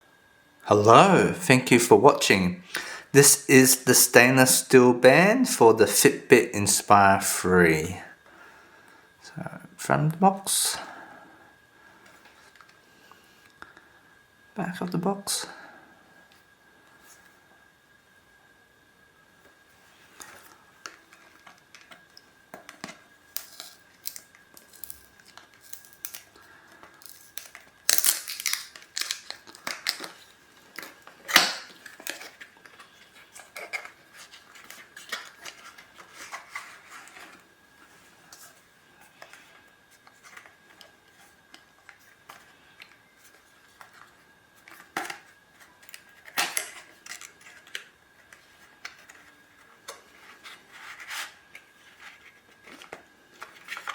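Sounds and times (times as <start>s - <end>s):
cardboard and plastic rustling: 20.0s - 53.9s
packaging tearing: 27.1s - 37.3s.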